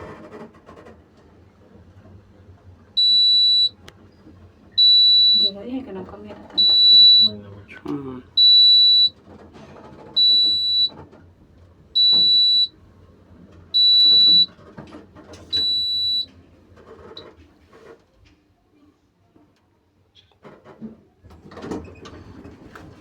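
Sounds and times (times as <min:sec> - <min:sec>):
elevator buzzer beeps: 0:03.0 - 0:03.8, 0:04.8 - 0:05.6, 0:06.6 - 0:07.4, 0:08.4 - 0:09.2, 0:10.2 - 0:11.0, 0:12.0 - 0:12.8, 0:13.7 - 0:14.5, 0:15.5 - 0:16.3.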